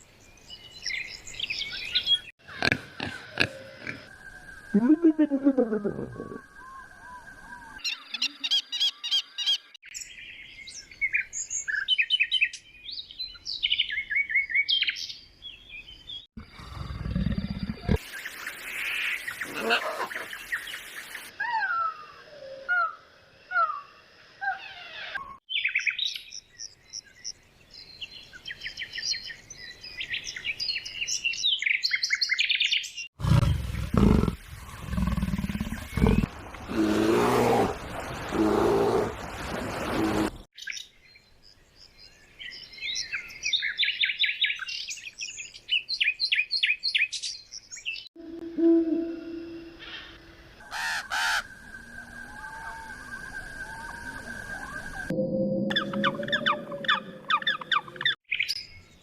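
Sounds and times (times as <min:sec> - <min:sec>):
high trilling bird song: 0:24.4 - 0:33.1, 0:51.1 - 0:59.0
birds calling in falling notes: 0:30.0 - 0:40.8, 0:45.8 - 0:55.1
large animal roaring: 0:33.2 - 0:39.2.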